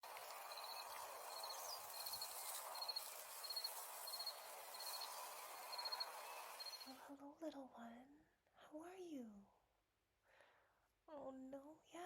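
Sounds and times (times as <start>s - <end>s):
background hiss: 0.0s - 7.0s
faint cricket chirping: 0.1s - 7.0s.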